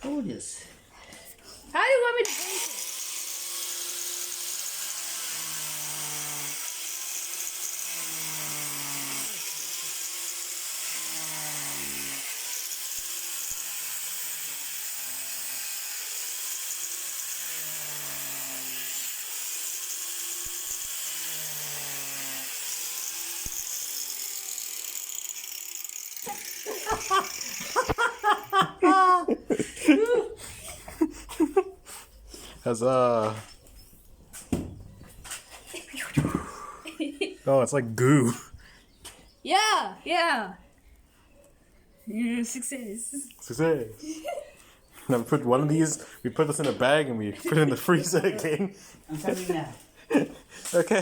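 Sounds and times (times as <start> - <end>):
angle grinder cutting: 2.2 - 28.7.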